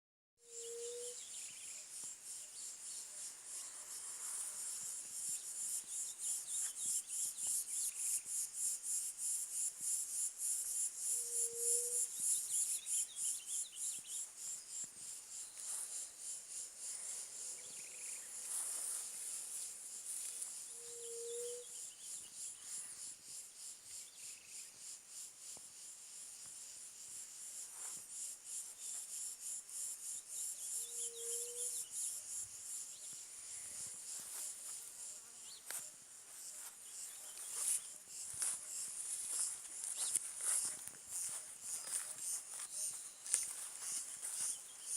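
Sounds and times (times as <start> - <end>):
faint high chirps: 0.4 - 1.9, 20.7 - 22.3
bird low rising whistle: 0.5 - 1.2, 20.8 - 21.7
insects pulsing drone: 0.5 - 44.9.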